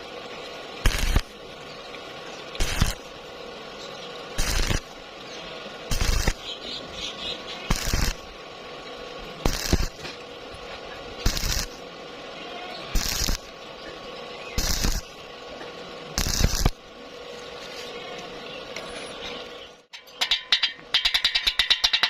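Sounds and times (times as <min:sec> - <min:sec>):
arc welding crackling strikes: 0:00.0 - 0:11.9, 0:12.9 - 0:16.9
steady hum: 0:00.0 - 0:22.0
rapid metallic clicking: 0:00.8 - 0:01.4, 0:02.5 - 0:03.1, 0:04.4 - 0:04.9, 0:05.9 - 0:06.5, 0:07.6 - 0:08.3, 0:09.4 - 0:10.2, 0:11.2 - 0:11.8, 0:13.0 - 0:13.5, 0:14.6 - 0:15.2, 0:19.9 - 0:22.0.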